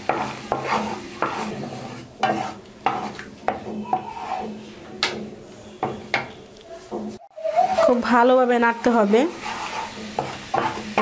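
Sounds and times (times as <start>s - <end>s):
light sizzle: 0.0s - 3.6s, 7.6s - 11.0s
spoon scraping a pan: 0.0s - 11.0s.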